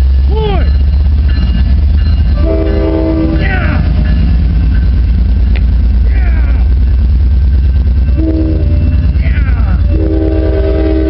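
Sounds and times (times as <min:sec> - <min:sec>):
loud low rumble: 0:00.0 - 0:11.0
train horn blast: 0:02.4 - 0:03.9, 0:08.1 - 0:11.0.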